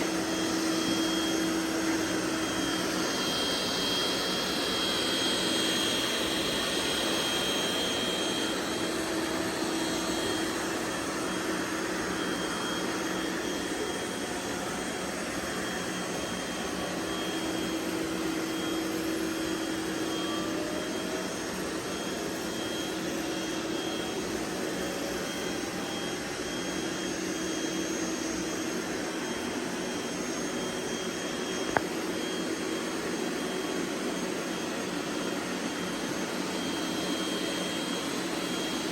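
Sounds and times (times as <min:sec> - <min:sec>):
robot vacuum cleaners whirring: 0:00.0 - 0:38.9.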